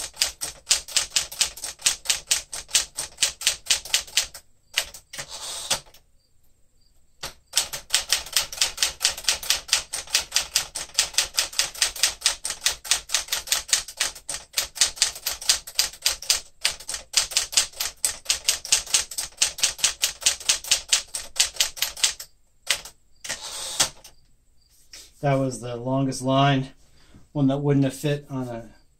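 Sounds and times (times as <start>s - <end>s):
typewriter keystrokes: 0.0s - 6.0s, 7.2s - 24.1s.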